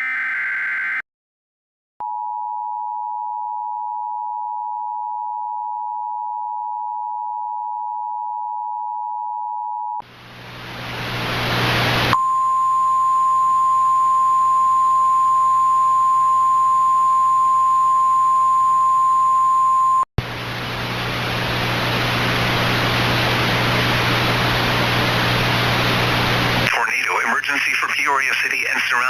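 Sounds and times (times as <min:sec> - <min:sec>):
radio static hiss: 0:10.0 - 0:12.2, 0:20.2 - 0:29.0
low hum: 0:10.0 - 0:26.7
radio warning alarm tone: 0:12.1 - 0:20.1.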